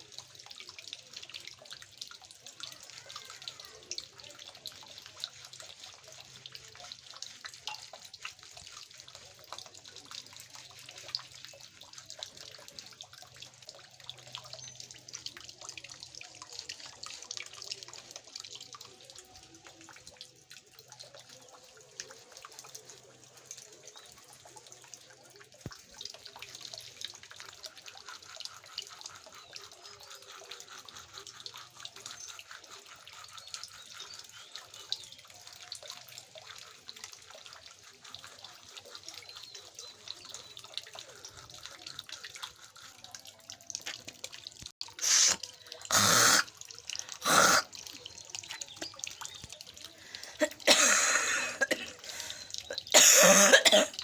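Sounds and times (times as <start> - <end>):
water trickling from tap: 0.0 - 54.0
person coughing: 50.3 - 52.1, 52.9 - 54.0.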